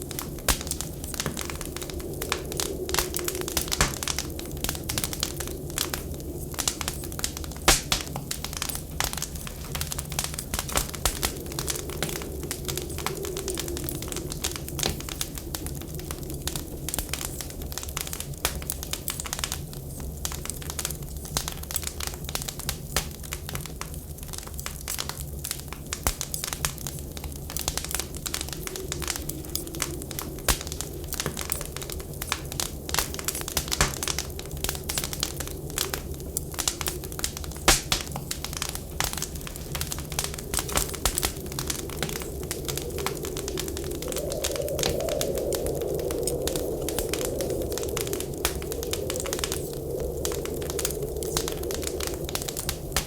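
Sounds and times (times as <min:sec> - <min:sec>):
wood fire crackling: 0:00.0 - 0:53.0
whistle of wind: 0:39.8 - 0:53.0.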